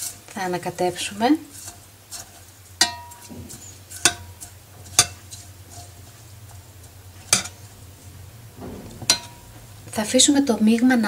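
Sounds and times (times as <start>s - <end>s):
spoon stirring water in saucepan: 0.0s - 8.2s, 8.9s - 10.3s
spoon clinking against pot: 1.7s - 5.9s.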